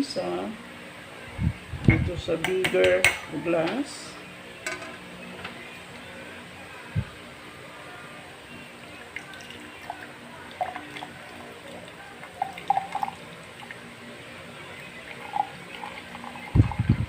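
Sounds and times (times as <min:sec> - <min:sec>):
liquid pouring into glass: 0:09.0 - 0:13.8.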